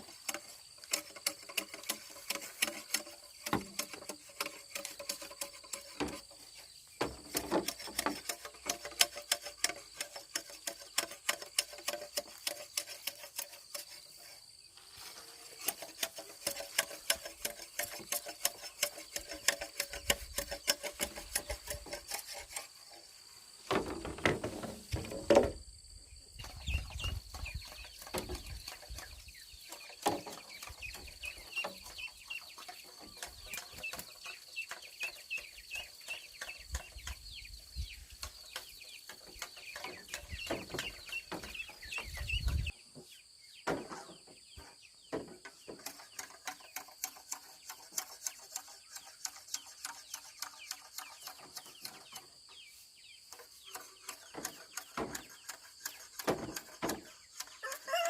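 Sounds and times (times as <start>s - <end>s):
chickens clucking: 26.4s - 42.8s.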